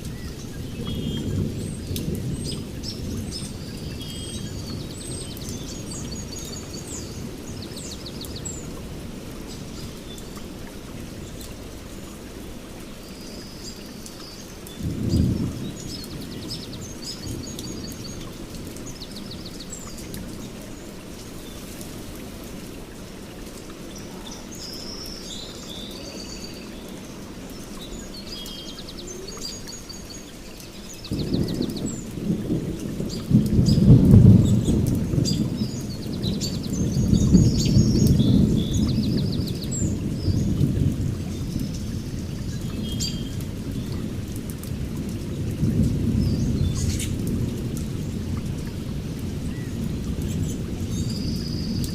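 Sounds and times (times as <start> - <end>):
steady rain: 0.0 - 51.9
birds chirping: 23.8 - 44.1
thunder rumbling: 31.1 - 51.9.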